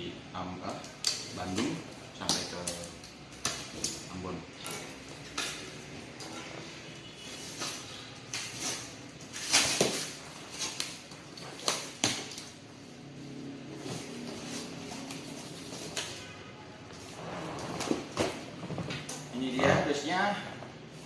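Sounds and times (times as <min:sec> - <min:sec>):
packaging rustling and crackling: 0:07.3 - 0:12.7.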